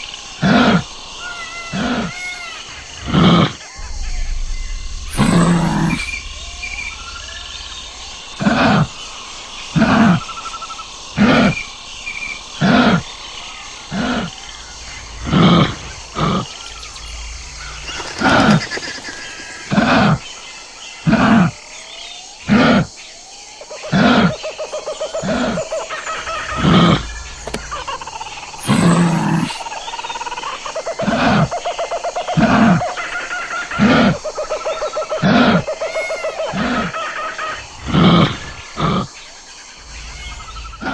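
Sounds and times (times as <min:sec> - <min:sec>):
faint bird chirps: 0:00.0 - 0:40.9
kangaroo calling: 0:25.1 - 0:39.0, 0:39.8 - 0:40.9.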